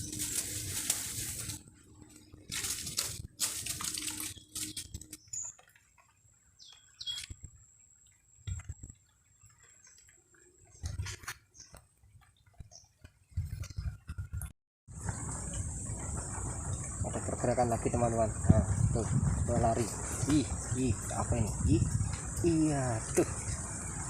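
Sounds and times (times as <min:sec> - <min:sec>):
handling clicks and rustles: 0:00.0 - 0:06.2
water splashing and dripping: 0:00.0 - 0:24.0.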